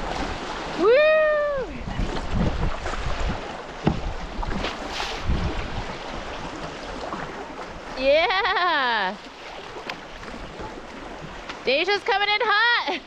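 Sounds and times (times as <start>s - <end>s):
wind buffeting microphone: 0.0s - 7.9s
sharp water splashes: 0.0s - 12.2s.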